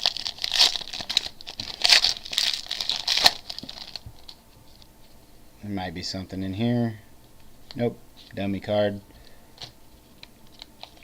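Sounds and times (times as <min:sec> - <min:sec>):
wrapper crinkling: 0:00.0 - 0:05.2, 0:09.6 - 0:11.0
cards rustling and clicking: 0:09.6 - 0:11.0.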